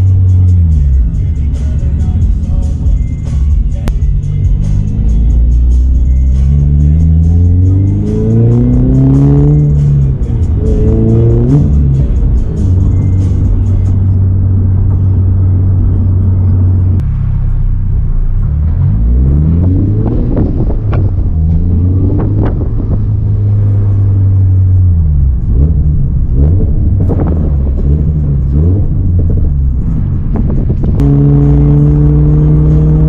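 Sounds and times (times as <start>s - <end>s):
car engine revving: 0.0s - 33.0s.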